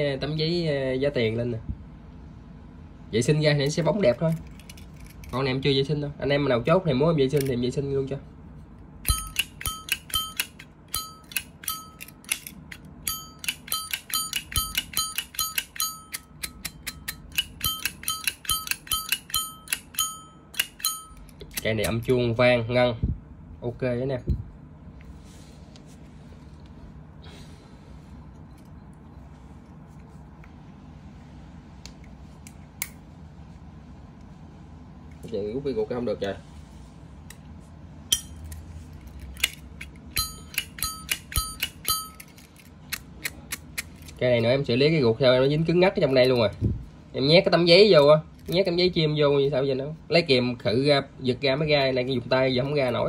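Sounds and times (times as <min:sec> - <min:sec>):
metallic lighter clicks and clinks: 0:09.0 - 0:22.0, 0:40.2 - 0:44.1.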